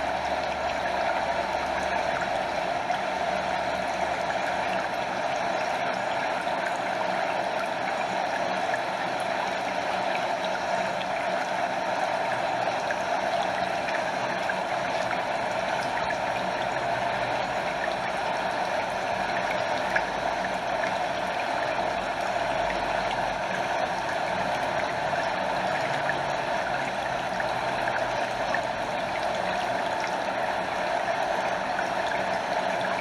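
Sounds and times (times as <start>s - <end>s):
stream water gurgling over waterfall: 0.0s - 33.0s.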